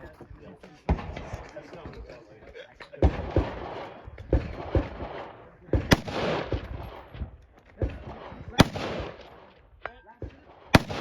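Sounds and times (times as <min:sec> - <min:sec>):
gunshots with echo: 0:03.0 - 0:09.8, 0:10.4 - 0:11.0.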